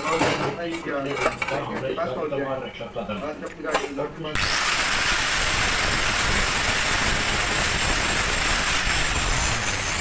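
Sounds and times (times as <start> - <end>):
welding arc crackling hiss: 4.4 - 10.0.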